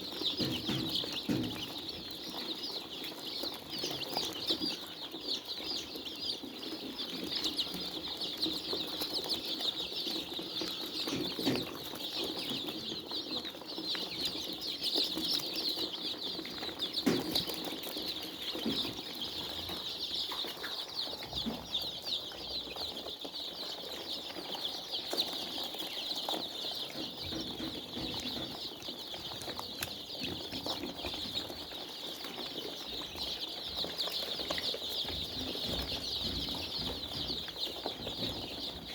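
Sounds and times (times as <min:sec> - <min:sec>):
chickens peeping: 0:00.0 - 0:38.9
knocks: 0:00.1 - 0:04.6, 0:33.0 - 0:38.9.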